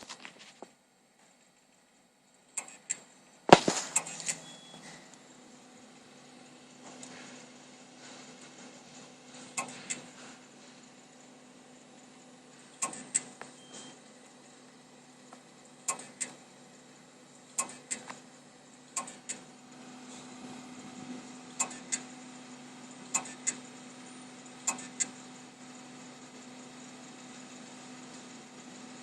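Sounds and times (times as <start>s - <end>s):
steady low hum: 0.0s - 29.0s
computer sharp clicks: 3.9s - 4.6s, 9.6s - 10.1s, 12.8s - 13.9s, 15.9s - 16.4s, 17.6s - 18.1s, 19.0s - 19.4s, 21.6s - 22.1s, 23.1s - 23.6s, 24.6s - 25.2s.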